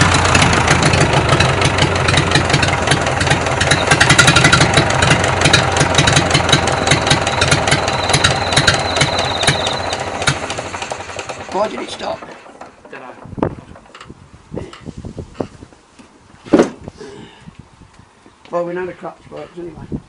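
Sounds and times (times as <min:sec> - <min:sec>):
small engine running: 0:00.0 - 0:13.3.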